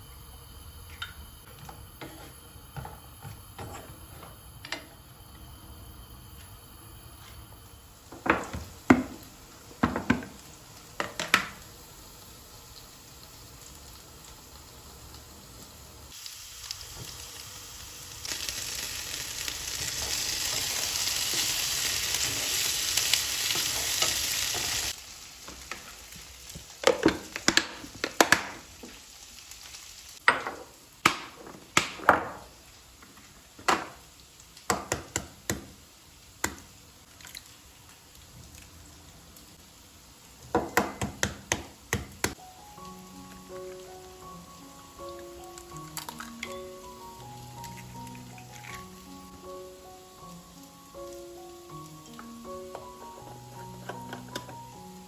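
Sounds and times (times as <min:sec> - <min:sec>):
steady hiss: 0:00.0 - 0:27.8, 0:37.7 - 0:55.0
household objects knocking and clinking: 0:09.8 - 0:10.4.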